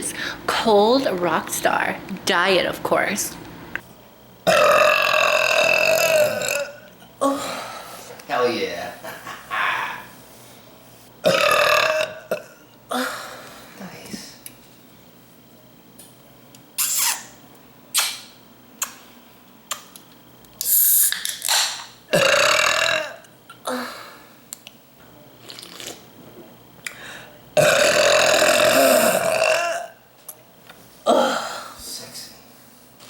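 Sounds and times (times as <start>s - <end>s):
woman burping: 4.5s - 6.8s, 11.2s - 13.0s, 22.1s - 23.8s, 27.6s - 30.0s.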